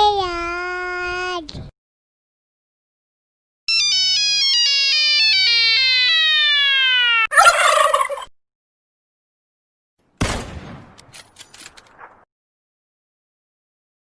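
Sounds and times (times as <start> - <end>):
electronic tone falling in pitch: 3.7 - 8.2.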